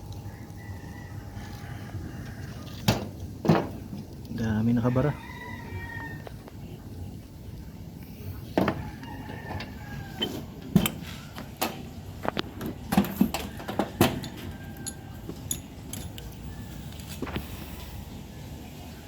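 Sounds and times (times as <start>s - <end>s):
hand tools and metal parts clinking: 9.5s - 17.4s.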